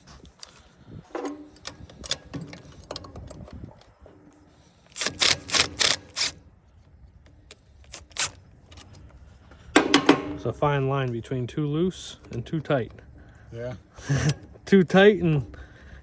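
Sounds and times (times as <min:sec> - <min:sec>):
loud rasping clatters: 0:04.9 - 0:06.4.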